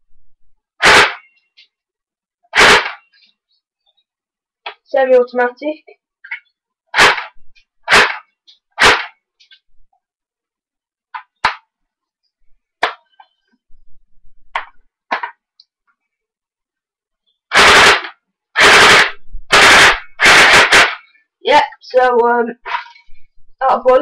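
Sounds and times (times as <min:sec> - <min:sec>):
airsoft gun cracks: 0:00.8 - 0:01.2, 0:02.6 - 0:03.0, 0:07.0 - 0:07.3, 0:07.9 - 0:08.2, 0:08.8 - 0:09.2, 0:17.5 - 0:21.0
loud noisy bursts: 0:00.8 - 0:01.2, 0:02.6 - 0:03.0, 0:17.5 - 0:21.1.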